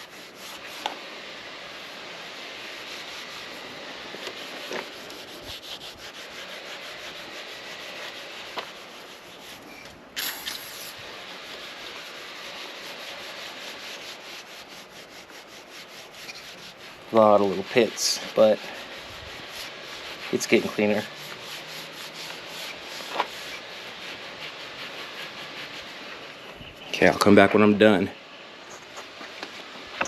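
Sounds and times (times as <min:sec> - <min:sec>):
steel wool scrubbing metal: 0:00.0 - 0:28.0
short hiss: 0:10.2 - 0:11.0.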